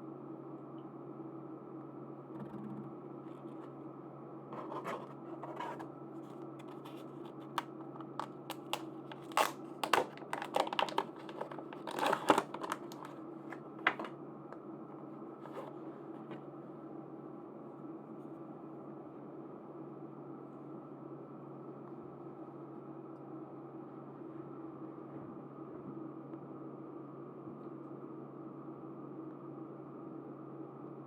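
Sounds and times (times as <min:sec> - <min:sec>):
packaging crinkling and tearing: 0:06.6 - 0:14.1, 0:15.4 - 0:16.4.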